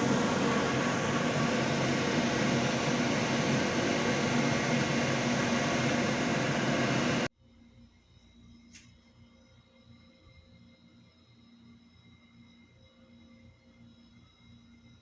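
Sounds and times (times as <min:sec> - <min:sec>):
low hum: 0:00.0 - 0:07.3
rushing machine noise: 0:00.0 - 0:07.3.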